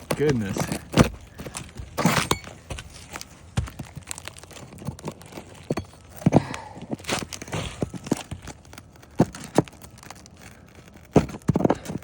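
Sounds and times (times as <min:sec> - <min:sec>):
pry bar metal knocks and scrapes: 0:00.0 - 0:03.0
shingle crunching and tearing: 0:00.0 - 0:12.0.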